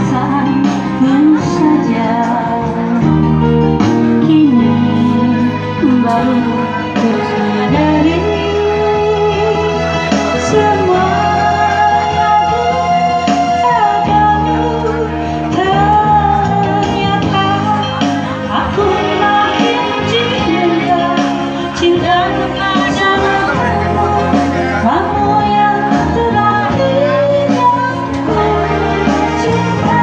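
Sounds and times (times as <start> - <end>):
instrumental backing chords: 0.0 - 30.0
person singing: 4.3 - 9.6.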